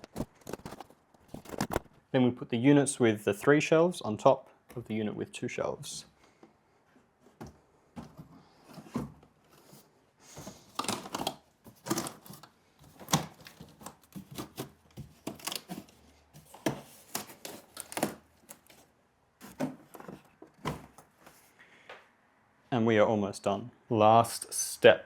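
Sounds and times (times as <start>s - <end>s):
cardboard shelving knocking and scraping: 7.2s - 18.8s, 19.4s - 21.5s.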